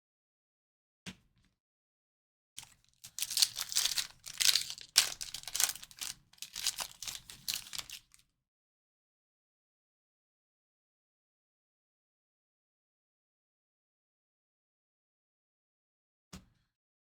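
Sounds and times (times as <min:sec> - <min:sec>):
card pack wrappers tearing: 0:02.6 - 0:08.2.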